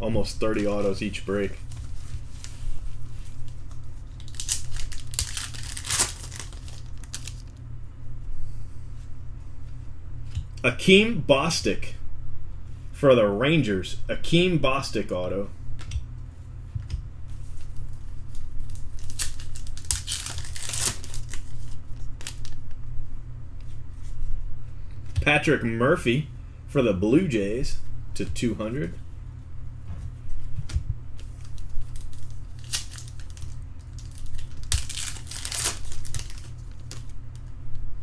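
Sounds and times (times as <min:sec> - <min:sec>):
steady low hum: 0:00.0 - 0:38.0
wrapper crinkling and tearing: 0:03.5 - 0:07.5, 0:18.6 - 0:22.6, 0:31.4 - 0:37.5.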